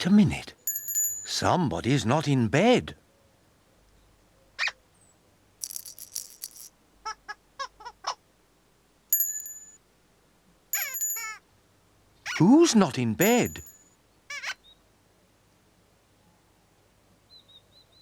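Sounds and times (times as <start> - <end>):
bell-like chime: 0.7 - 1.3, 9.2 - 9.8, 10.8 - 11.4, 13.2 - 13.8
cartoon rattle: 5.6 - 6.7, 10.8 - 11.4, 13.2 - 13.7.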